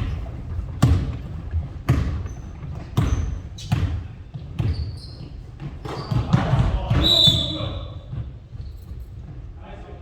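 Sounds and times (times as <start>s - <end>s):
basketballs bouncing on wooden floor: 0.0s - 9.4s
shoe squeaks: 4.6s - 6.3s, 7.0s - 8.0s.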